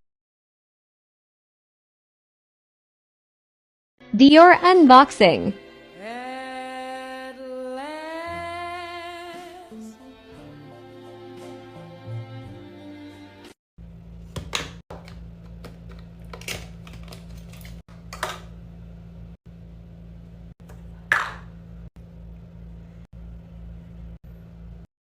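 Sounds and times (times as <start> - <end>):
steady low hum: 17.4 - 24.9.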